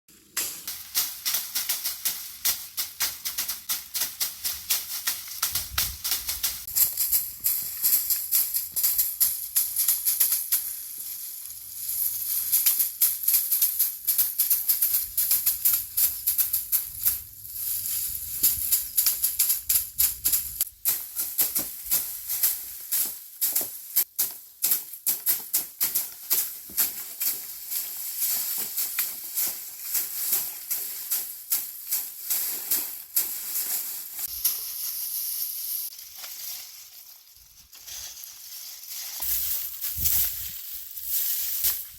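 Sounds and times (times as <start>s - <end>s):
plants being threshed: 0.1s - 41.9s
seeds rattling and pattering: 0.2s - 41.9s.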